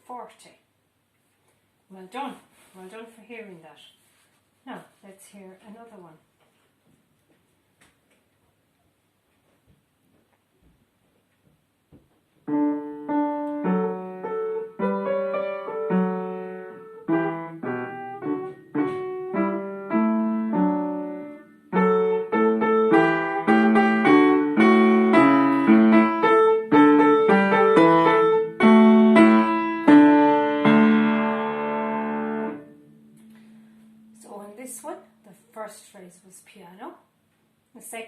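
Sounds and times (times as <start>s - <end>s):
piano piece: 12.4s - 35.4s.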